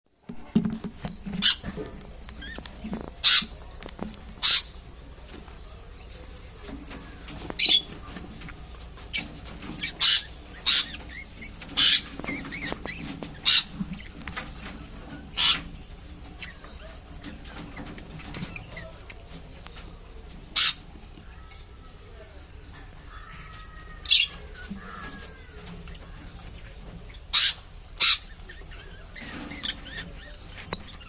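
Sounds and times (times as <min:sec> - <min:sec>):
parrots squawking: 0:02.4 - 0:03.6, 0:04.2 - 0:04.8, 0:07.5 - 0:19.3, 0:20.4 - 0:21.6, 0:23.0 - 0:31.0.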